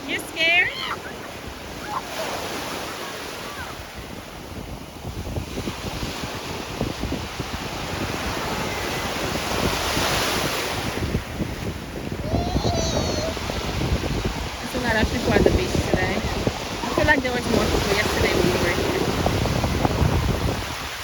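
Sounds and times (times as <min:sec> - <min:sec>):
surf washing onto beach: 0:00.0 - 0:21.0
wind buffeting microphone: 0:00.0 - 0:21.0.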